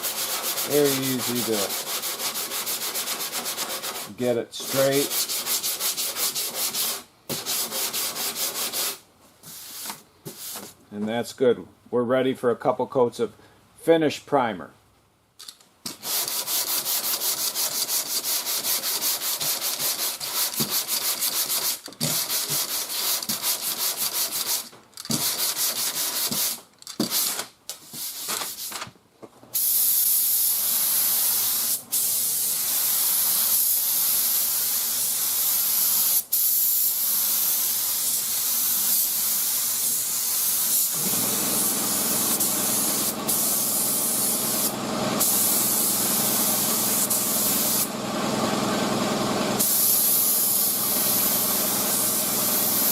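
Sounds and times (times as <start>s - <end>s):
hand sanding strokes: 0.0s - 10.8s, 15.9s - 28.7s
spray gun hissing: 29.6s - 47.9s, 49.6s - 52.9s.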